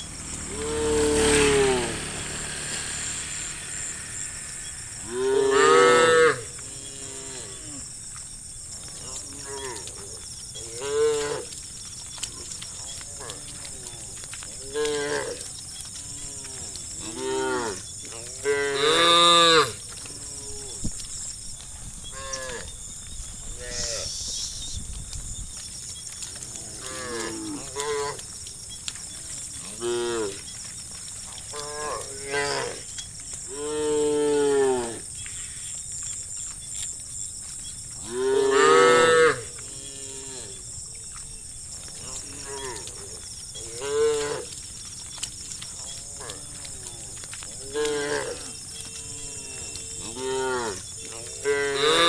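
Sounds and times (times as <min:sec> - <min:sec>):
cattle mooing: 0:00.0 - 0:07.8, 0:14.6 - 0:20.8, 0:26.6 - 0:28.3, 0:29.4 - 0:30.5, 0:31.5 - 0:32.9, 0:33.5 - 0:35.1, 0:38.0 - 0:40.6, 0:41.9 - 0:44.6, 0:45.8 - 0:52.0.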